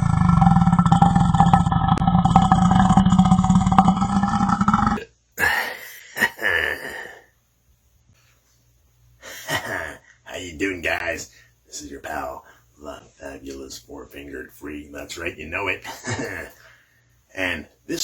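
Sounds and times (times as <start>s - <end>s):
man belching: 0.0s - 7.2s.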